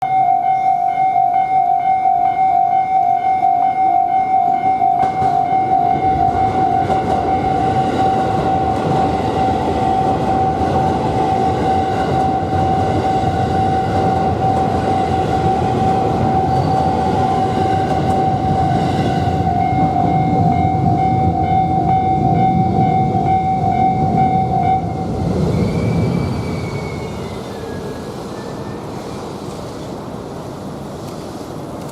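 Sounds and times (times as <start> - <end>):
level crossing warning bell: 0.0 - 25.3
train wheels rumbling on rails: 3.0 - 31.9.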